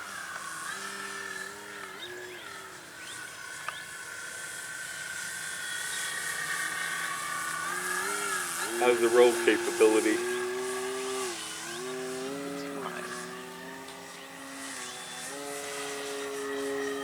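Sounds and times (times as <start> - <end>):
model plane electric motor whine: 0.0 - 17.0.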